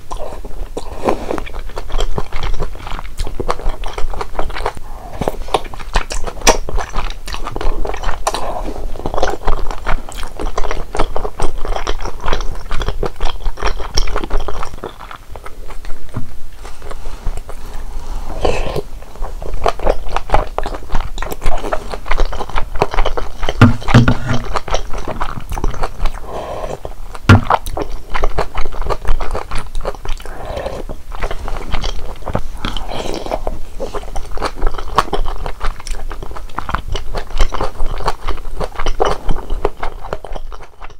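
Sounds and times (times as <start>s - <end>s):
wet chewing and biting: 0.0s - 40.9s.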